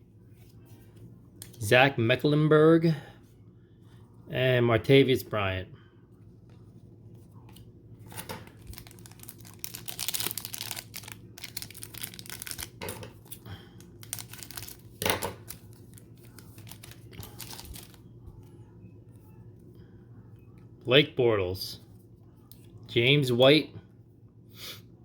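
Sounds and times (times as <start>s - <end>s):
foil wrapper tearing and crinkling: 8.1s - 18.0s.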